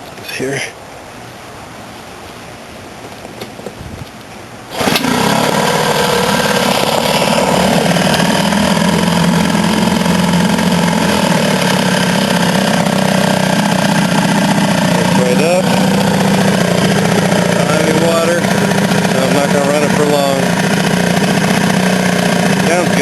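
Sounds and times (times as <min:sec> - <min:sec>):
outboard motor idling: 0:04.7 - 0:23.0.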